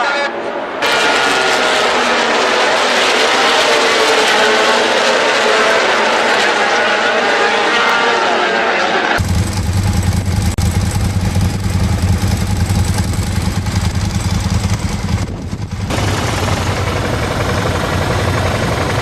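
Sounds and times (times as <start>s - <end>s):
engine running: 9.2s - 19.0s.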